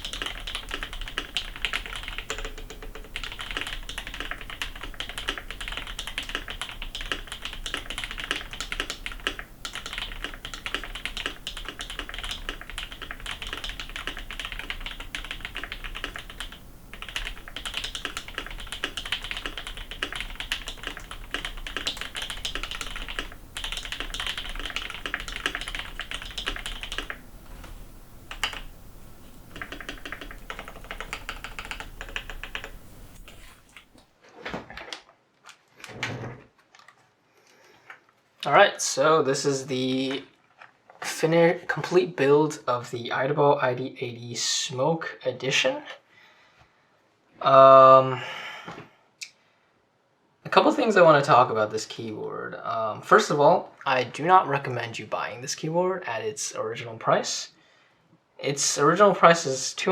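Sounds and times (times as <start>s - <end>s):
mechanical keyboard typing: 0.0s - 28.8s, 29.4s - 33.9s.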